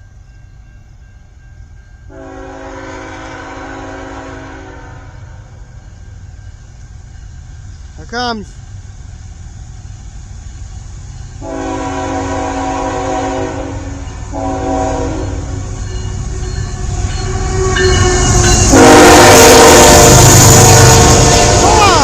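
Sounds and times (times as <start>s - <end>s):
train rumbling: 0.0s - 22.0s
locomotive air horn blasts: 2.1s - 5.2s, 11.4s - 15.7s, 16.9s - 22.0s.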